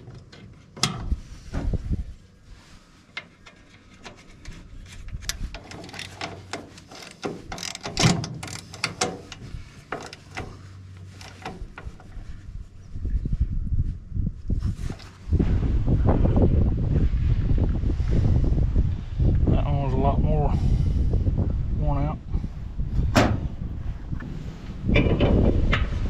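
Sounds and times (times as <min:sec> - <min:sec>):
loud metal knock: 0:23.1 - 0:23.5.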